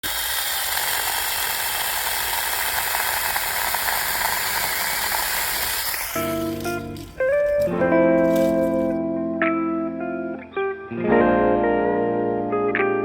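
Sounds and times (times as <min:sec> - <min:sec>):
cordless chainsaw running: 0:00.0 - 0:09.0
music: 0:06.2 - 0:13.0.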